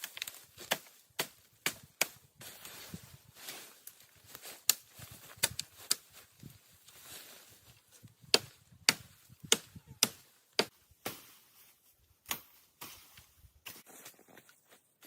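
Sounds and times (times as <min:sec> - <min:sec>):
sharp chopping strikes: 0:08.3 - 0:11.3, 0:12.3 - 0:13.0.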